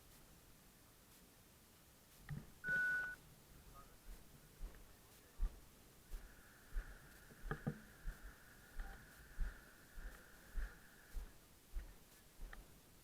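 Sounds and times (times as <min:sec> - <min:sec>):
electronic beep: 0:02.6 - 0:03.2.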